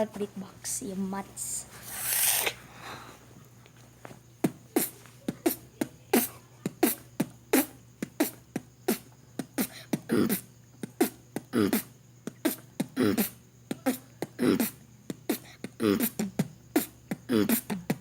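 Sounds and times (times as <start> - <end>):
person beatboxing: 4.4 - 18.0.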